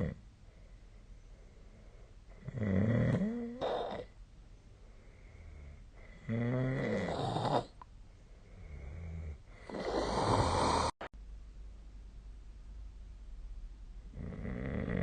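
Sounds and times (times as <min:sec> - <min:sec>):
person snoring: 0:06.1 - 0:07.8, 0:08.6 - 0:11.1, 0:14.1 - 0:15.0.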